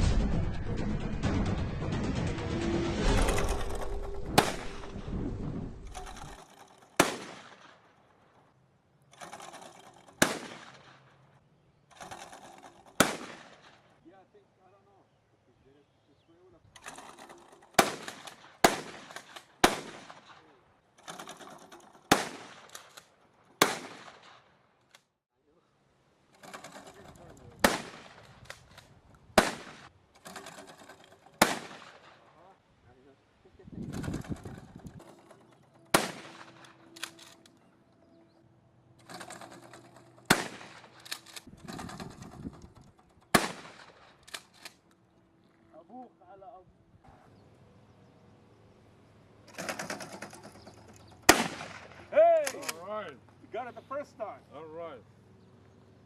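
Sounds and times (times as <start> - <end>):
gunshots with echo: 3.1 - 5.1, 17.8 - 20.4, 27.6 - 28.3, 29.4 - 29.9, 31.4 - 32.2, 35.9 - 36.7, 40.3 - 41.0, 43.3 - 44.1, 51.3 - 52.1.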